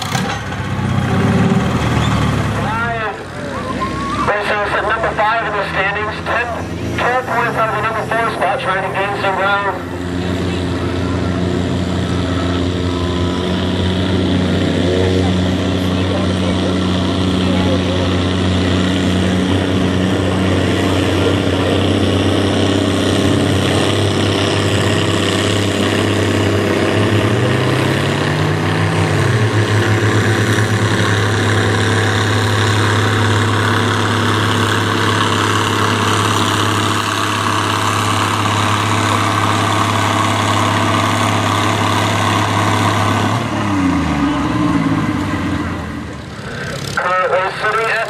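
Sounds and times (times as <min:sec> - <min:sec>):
tractor diesel engine under load: 0:00.0 - 0:48.0.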